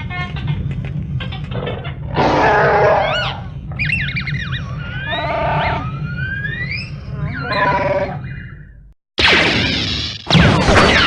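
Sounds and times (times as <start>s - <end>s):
buzzy squawks: 1.7s - 8.6s
robot beeping and whistling: 3.1s - 8.2s.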